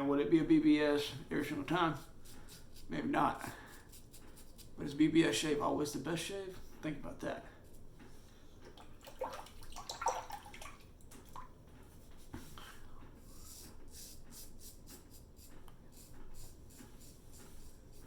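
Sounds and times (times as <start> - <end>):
razor scraping stubble: 0.9 - 6.3.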